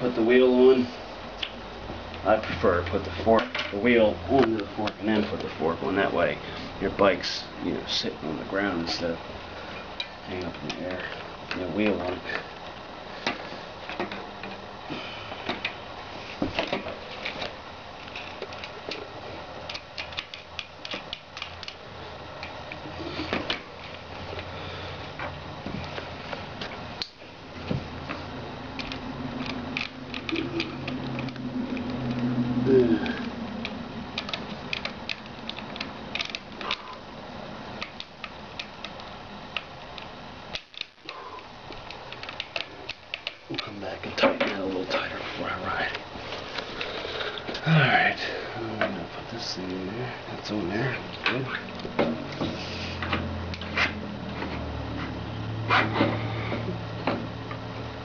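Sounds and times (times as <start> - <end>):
bicycle parts clicking and knocking: 1.4 - 5.5, 9.7 - 14.7, 15.3 - 15.8, 16.4 - 24.5, 25.1 - 37.1, 37.7 - 44.8.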